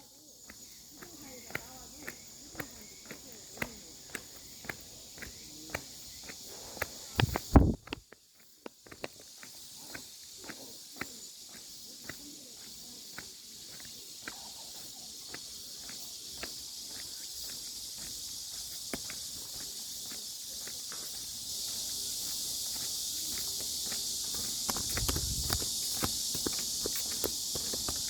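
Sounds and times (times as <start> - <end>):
footsteps on outdoor path: 0.2 - 28.0
thump and rustle: 7.2 - 8.0
steady high hiss: 13.2 - 28.0.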